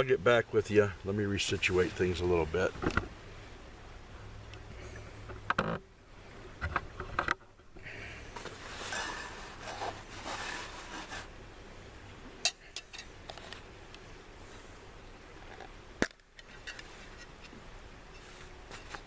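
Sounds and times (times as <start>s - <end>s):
gear rustling and scraping: 8.3s - 11.3s, 16.4s - 19.0s.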